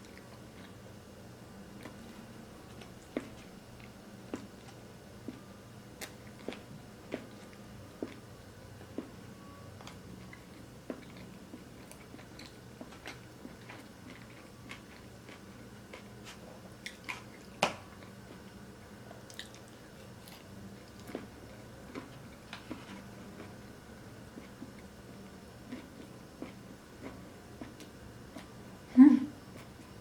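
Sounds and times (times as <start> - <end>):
chewing and wet mouth sounds: 6.0 - 8.2, 8.8 - 9.2, 9.8 - 18.5, 19.1 - 23.6, 24.3 - 28.5.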